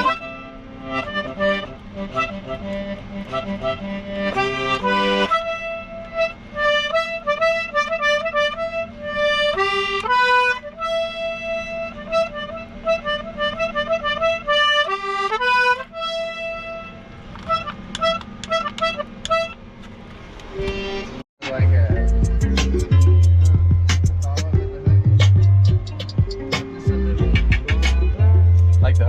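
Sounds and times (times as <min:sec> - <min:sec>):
steady low drone: 0:21.4 - 0:29.0.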